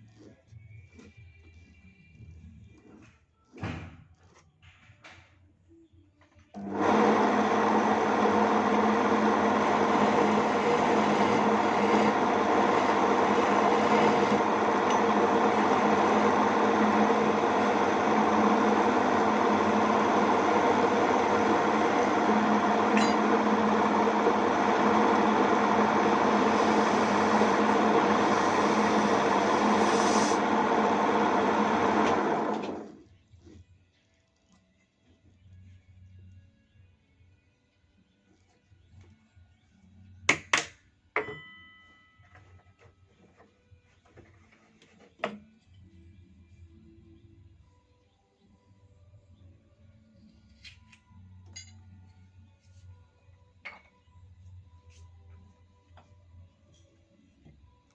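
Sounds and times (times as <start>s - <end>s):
lathe motor humming: 6.6s - 33.0s.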